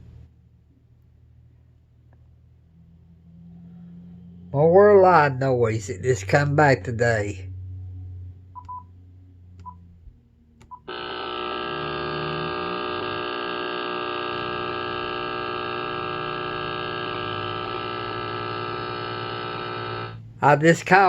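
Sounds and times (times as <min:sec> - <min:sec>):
short beeps: 0:08.6 - 0:08.9
loud electrical buzz: 0:10.8 - 0:21.0.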